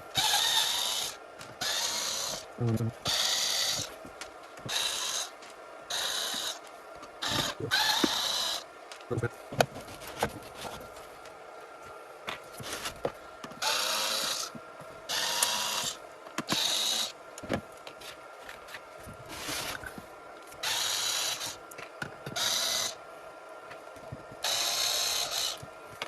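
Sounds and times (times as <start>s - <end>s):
electric screwdriver whirring: 0.2s - 2.4s, 3.0s - 3.9s, 4.7s - 5.3s, 5.9s - 6.6s, 7.2s - 8.6s, 13.6s - 14.5s, 15.1s - 17.2s, 20.6s - 21.6s, 22.3s - 23.0s, 24.4s - 25.7s.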